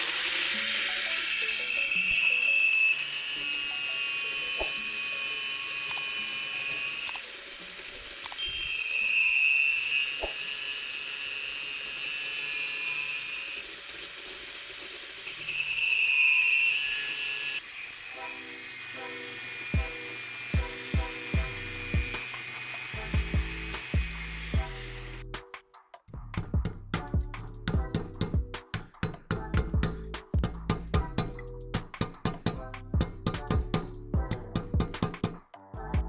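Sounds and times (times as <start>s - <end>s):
power tool whining: 0.0s - 25.4s.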